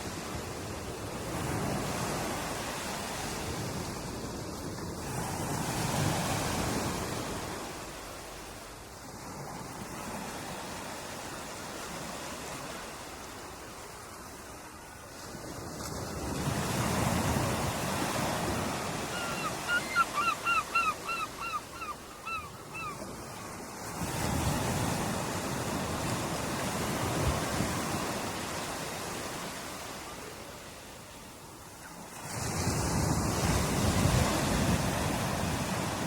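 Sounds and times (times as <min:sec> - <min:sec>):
ocean surf washing on beach: 0:00.0 - 0:21.2, 0:22.0 - 0:36.0
seagull calling: 0:18.9 - 0:23.0.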